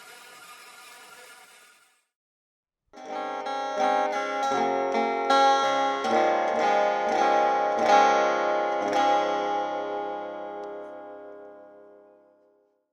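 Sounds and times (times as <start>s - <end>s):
plucked string music: 3.0s - 12.2s.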